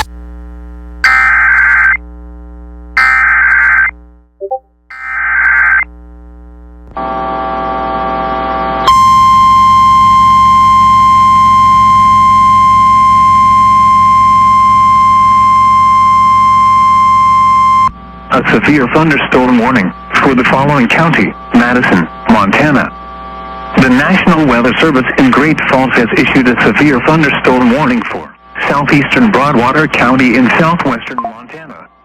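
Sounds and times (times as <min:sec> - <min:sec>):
screeching digital data bursts: 0:01.0 - 0:02.0, 0:03.0 - 0:03.9, 0:04.9 - 0:05.9
steady high attention tone: 0:01.0 - 0:02.0, 0:03.0 - 0:05.8, 0:27.2 - 0:32.0.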